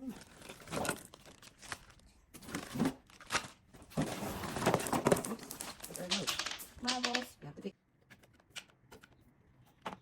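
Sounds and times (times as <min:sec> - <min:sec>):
plastic packaging crinkling: 0:00.0 - 0:07.3.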